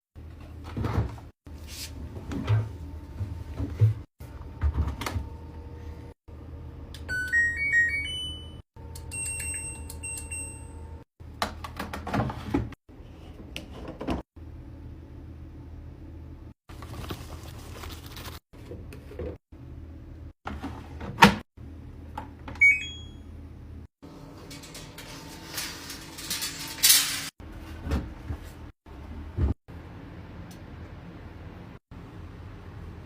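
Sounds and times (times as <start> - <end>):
washing machine electronic beeps: 7.0 - 11.0, 22.6 - 23.3
button beeps: 22.6 - 23.2.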